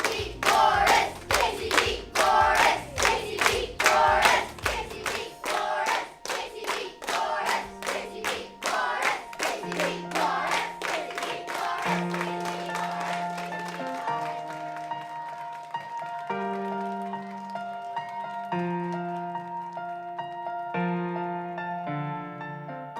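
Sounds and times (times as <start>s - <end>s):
children chanting: 0.0s - 14.8s
clapping: 0.0s - 20.7s
background music with held notes: 0.0s - 22.9s.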